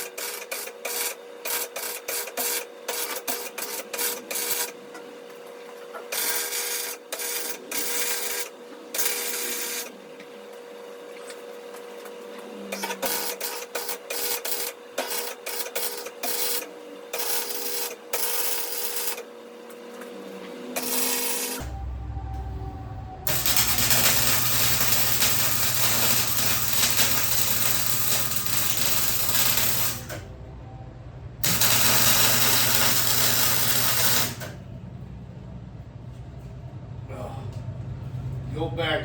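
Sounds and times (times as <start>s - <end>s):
welding arc crackling: 17.2s - 19.2s, 23.3s - 30.2s, 31.4s - 34.6s
steady hum: 19.2s - 38.3s.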